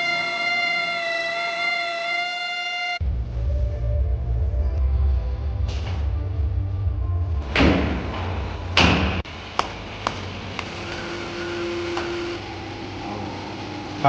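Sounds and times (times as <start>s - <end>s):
background music with bass: 3.0s - 9.3s.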